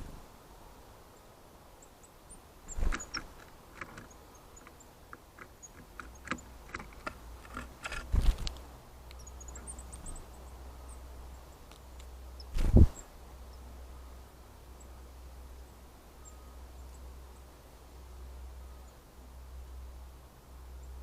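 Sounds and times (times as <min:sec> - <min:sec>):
bird tapping on camera: 0:02.9 - 0:08.6.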